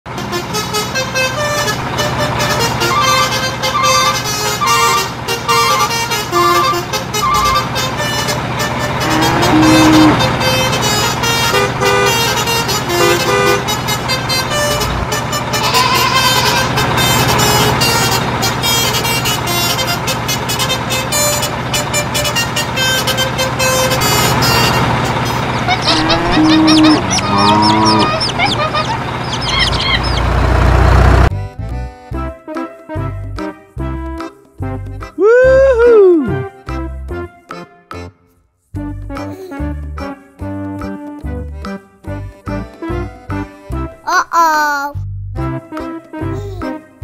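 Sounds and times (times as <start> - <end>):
upbeat background music: 31.3 - 35.2, 38.8 - 44.5.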